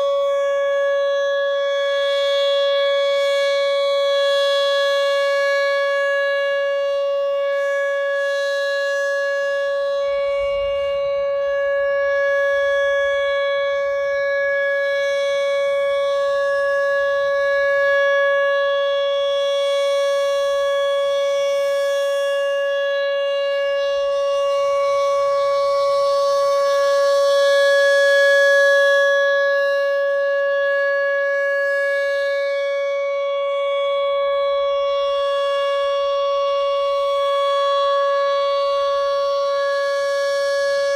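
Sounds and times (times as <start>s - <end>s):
electronic siren steady alert tone: 0.0s - 40.9s.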